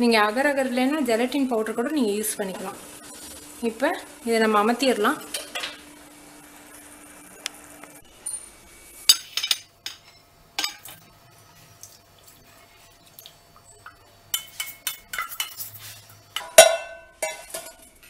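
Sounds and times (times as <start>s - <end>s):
metal pan and utensils clinking: 9.1s - 11.0s, 13.8s - 17.9s.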